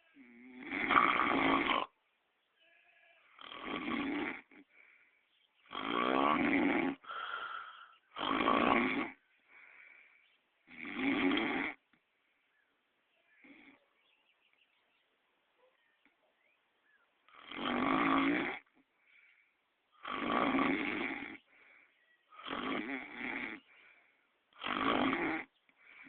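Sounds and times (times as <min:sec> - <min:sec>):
loud snoring: 0:00.2 - 0:02.0, 0:03.4 - 0:04.7, 0:05.6 - 0:09.2, 0:10.7 - 0:11.8, 0:17.3 - 0:18.7, 0:20.0 - 0:21.5, 0:22.4 - 0:23.7, 0:24.5 - 0:25.6.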